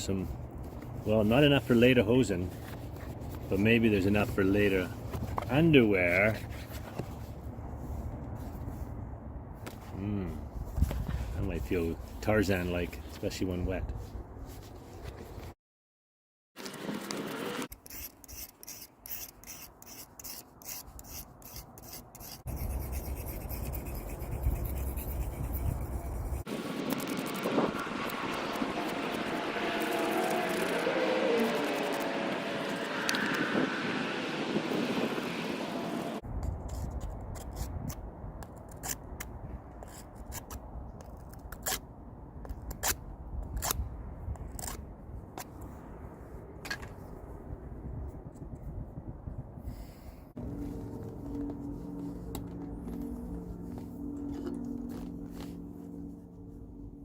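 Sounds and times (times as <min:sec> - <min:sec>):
hand rasp filing strokes: 0:17.8 - 0:33.2
steady low rumble: 0:22.5 - 0:29.8, 0:43.1 - 0:57.0
steady rushing noise: 0:24.3 - 0:36.2.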